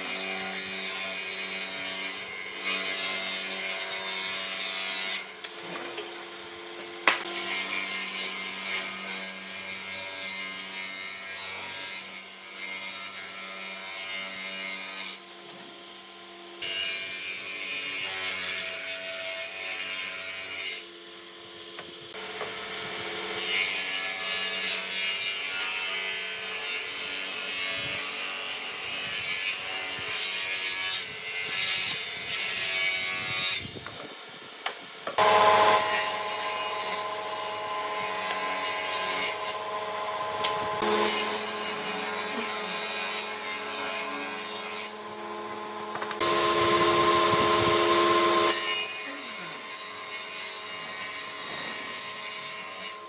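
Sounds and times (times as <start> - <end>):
power tool sanding wood: 35.2 - 53.0.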